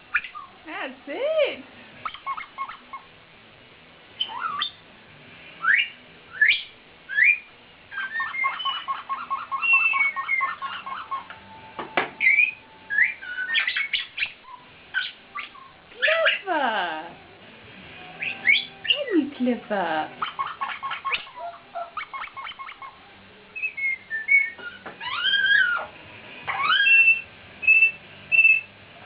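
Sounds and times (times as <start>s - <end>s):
parrots whistling and squawking: 0.0s - 0.6s, 2.0s - 3.2s, 4.2s - 4.8s, 5.6s - 16.5s, 18.1s - 19.1s, 20.1s - 23.0s, 23.6s - 28.8s.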